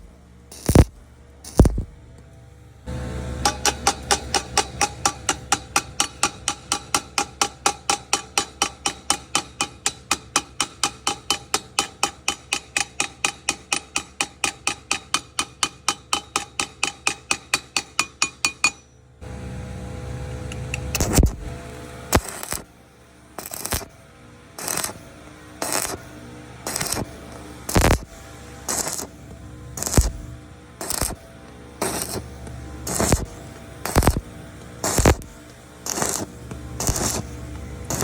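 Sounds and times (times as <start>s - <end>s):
low hum: 0.0s - 4.7s, 18.9s - 38.0s.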